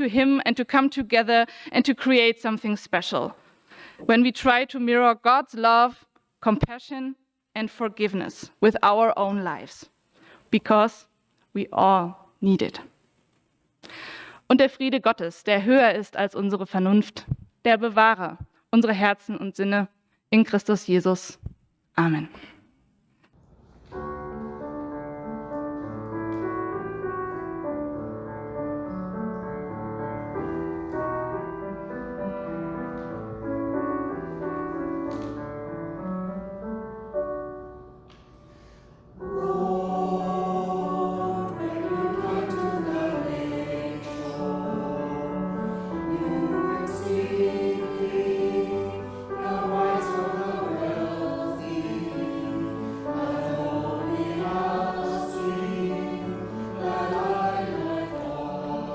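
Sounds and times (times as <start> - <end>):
group singing: 39.2 - 58.9.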